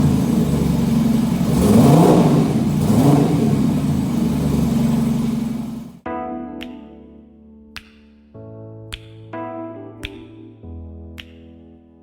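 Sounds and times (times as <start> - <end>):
motorcycle engine idling and revving: 0.0 - 6.0.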